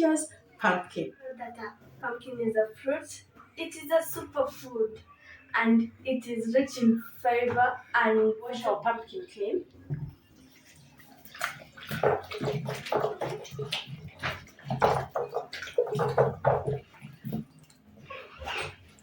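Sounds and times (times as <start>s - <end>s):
water splashing and sloshing: 9.6s - 19.0s.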